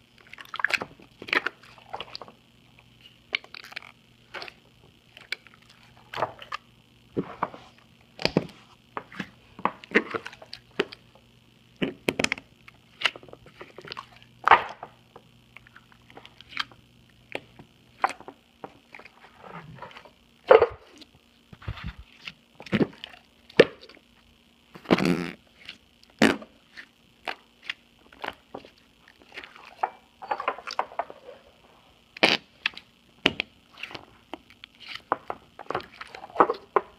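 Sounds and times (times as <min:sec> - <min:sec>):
slime squelching: 0:00.2 - 0:02.4
fart-like slime pops: 0:24.8 - 0:25.4, 0:26.2 - 0:26.5, 0:32.2 - 0:32.5.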